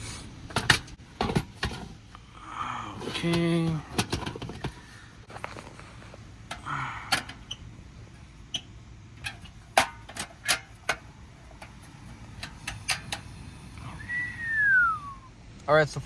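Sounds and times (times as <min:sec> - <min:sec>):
camp stove and cooking gear clicking: 0:03.2 - 0:14.2.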